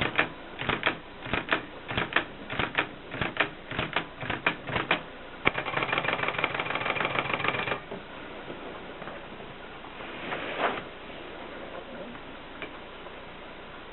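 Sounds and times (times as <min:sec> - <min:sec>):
typewriter key strikes: 0:00.0 - 0:07.8
typewriter rapid clicking: 0:00.0 - 0:07.8.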